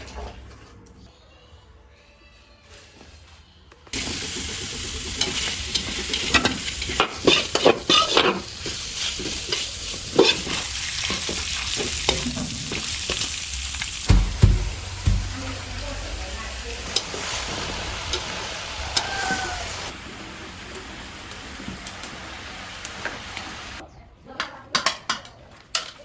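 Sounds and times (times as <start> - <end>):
meat sizzling in a pan: 4.0 - 23.8
utensil scraping and knocking pan: 5.0 - 12.9, 14.1 - 15.9.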